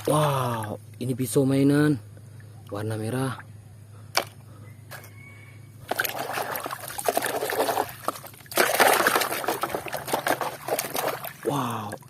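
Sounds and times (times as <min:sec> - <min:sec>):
water running and splashing: 0:05.9 - 0:12.0.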